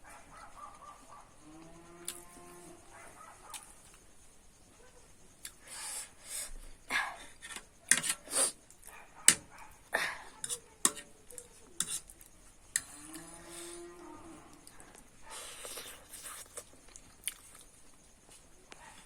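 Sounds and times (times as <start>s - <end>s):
cutlery clinking on a plate: 7.9s - 8.2s, 10.4s - 11.1s.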